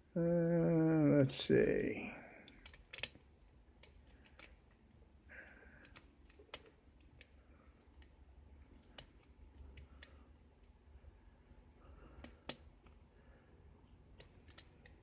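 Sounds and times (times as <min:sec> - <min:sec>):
lock pick clicking in lock: 0:02.5 - 0:03.2.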